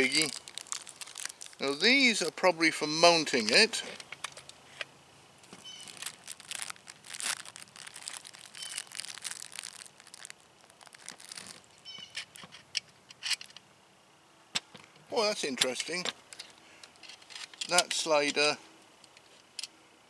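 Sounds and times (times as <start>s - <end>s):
plastic packaging crinkling: 0.0s - 4.5s, 5.4s - 12.4s.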